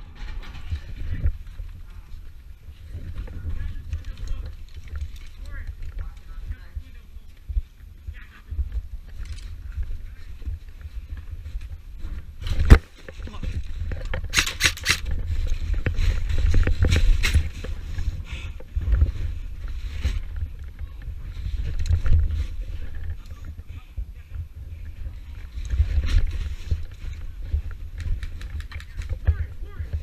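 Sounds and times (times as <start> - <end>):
rumbling wind: 0.0 - 30.0
camera handling noise: 12.4 - 17.8.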